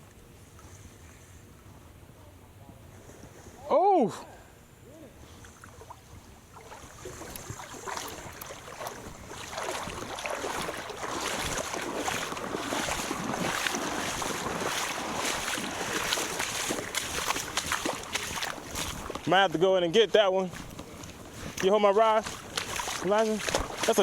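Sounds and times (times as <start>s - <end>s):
water splashing around kayak: 5.3s - 24.0s
wind buffeting microphone: 6.1s - 19.3s.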